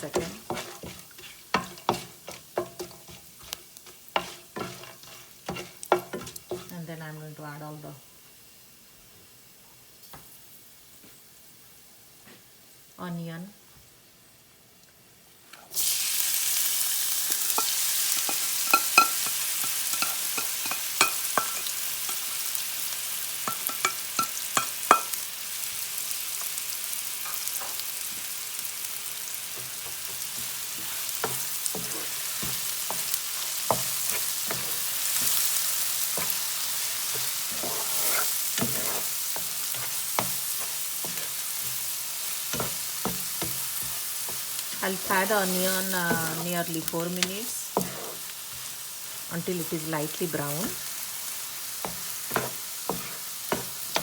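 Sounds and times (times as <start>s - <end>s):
onion sizzling in hot oil: 0.0s - 11.6s, 15.2s - 54.0s
spatula scraping metal pan: 0.2s - 3.6s, 4.2s - 6.7s, 37.1s - 41.8s, 47.8s - 48.3s.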